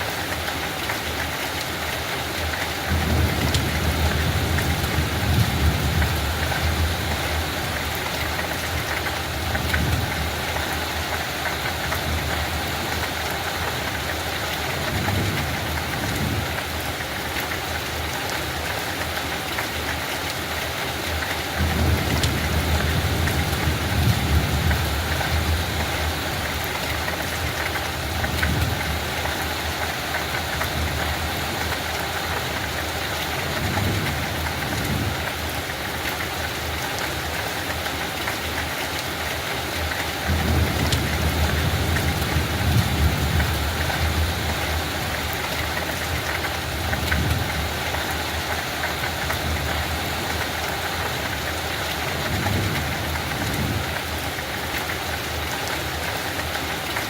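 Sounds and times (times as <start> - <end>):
steady rain falling: 0.0 - 57.0.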